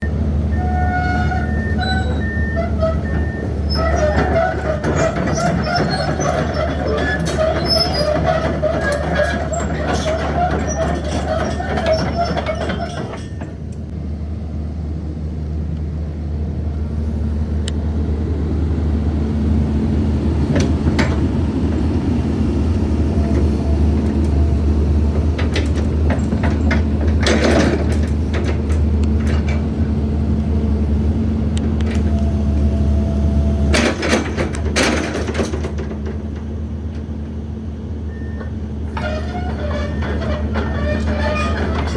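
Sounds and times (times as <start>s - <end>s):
excavator diesel engine drone: 0.0s - 41.9s
machine clanks: 1.0s - 13.9s, 25.1s - 29.7s, 33.7s - 36.5s, 38.9s - 41.9s.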